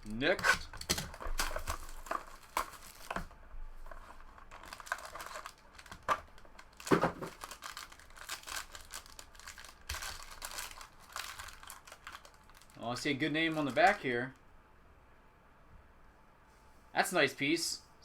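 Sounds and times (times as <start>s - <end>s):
packaging crinkling and tearing: 0.2s - 14.0s.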